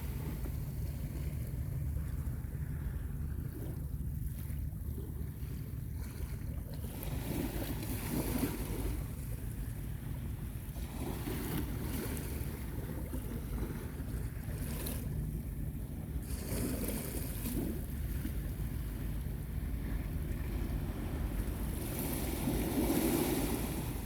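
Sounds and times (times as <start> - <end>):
wind rumble on microphone: 0.0 - 24.0
sea waves washing onto beach: 20.8 - 24.0.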